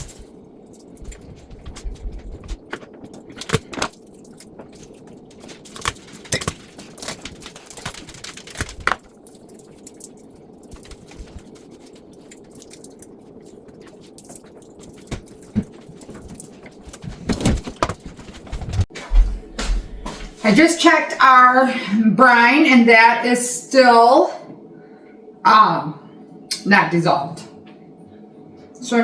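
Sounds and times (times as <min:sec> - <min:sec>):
low background hum: 0:00.0 - 0:29.0.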